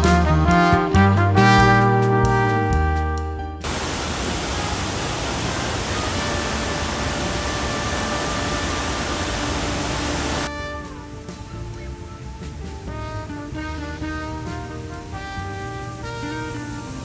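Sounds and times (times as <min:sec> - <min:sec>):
waterfall roaring: 0:03.6 - 0:11.5.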